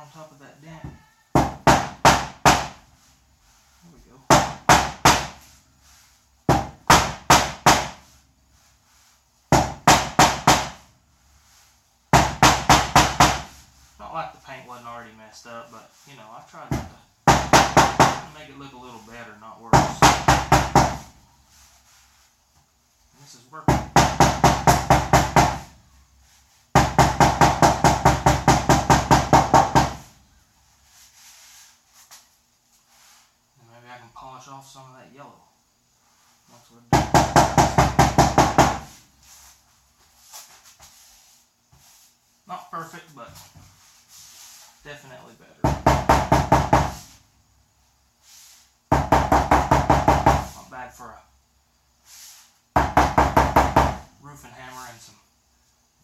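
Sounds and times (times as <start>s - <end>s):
hammer striking car fender: 4.3s - 5.4s, 6.5s - 8.0s, 9.5s - 10.8s, 12.2s - 13.5s, 16.8s - 18.3s, 19.8s - 21.1s, 23.7s - 25.7s, 26.8s - 30.1s, 48.9s - 50.6s.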